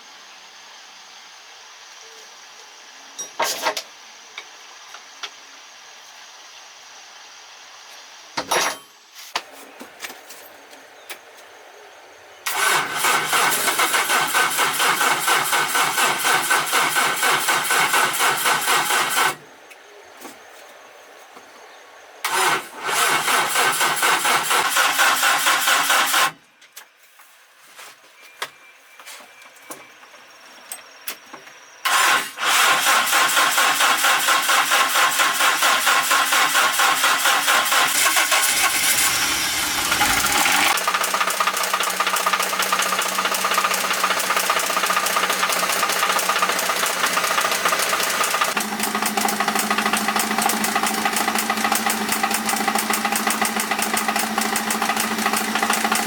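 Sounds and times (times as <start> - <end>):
truck engine running: 31.9 - 56.0.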